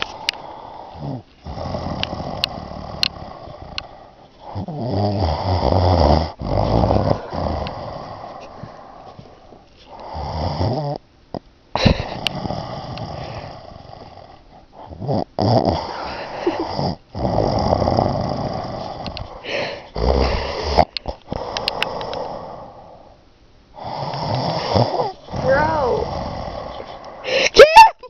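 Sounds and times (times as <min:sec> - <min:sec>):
snoring: 0:00.0 - 0:11.0, 0:11.8 - 0:23.2, 0:23.8 - 0:27.3.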